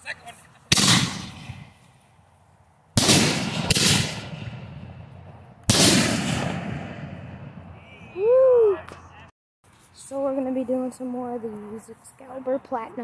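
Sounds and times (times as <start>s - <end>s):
firework crack: 0.6s - 2.0s, 2.9s - 7.7s
firework shell booms: 0.7s - 1.8s, 3.0s - 7.7s.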